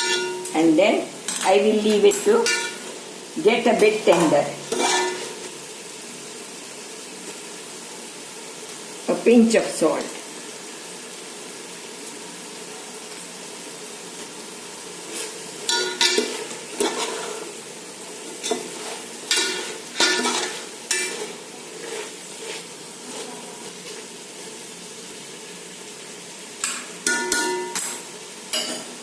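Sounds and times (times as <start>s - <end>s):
spoon scraping and clinking on pan: 0.0s - 0.5s, 1.2s - 2.9s, 4.1s - 5.5s, 15.1s - 17.5s, 18.3s - 24.0s, 26.6s - 29.0s
food sizzling in a pan: 0.0s - 29.0s.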